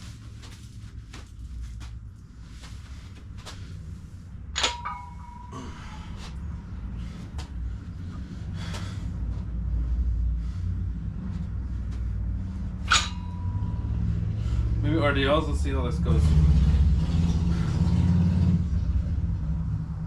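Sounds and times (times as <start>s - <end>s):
steady low rumble: 0.0s - 20.0s
sharp metallic clanks: 4.6s - 6.2s, 12.8s - 14.8s.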